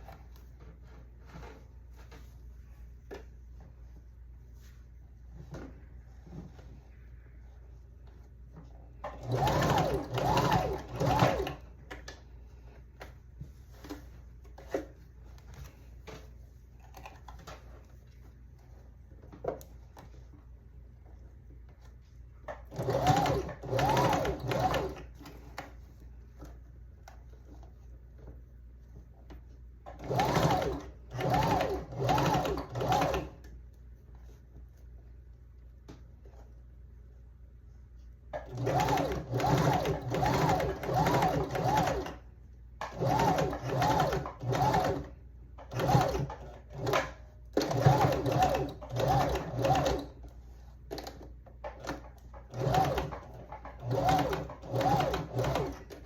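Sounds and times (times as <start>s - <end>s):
sewing machine stitching: 9.0s - 11.7s, 22.5s - 25.6s, 29.9s - 33.4s, 38.3s - 42.2s, 42.8s - 50.2s, 50.9s - 56.0s.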